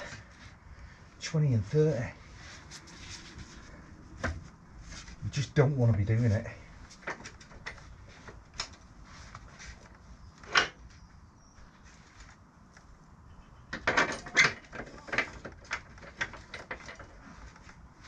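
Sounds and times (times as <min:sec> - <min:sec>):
tools and parts knocking: 0:13.7 - 0:17.2.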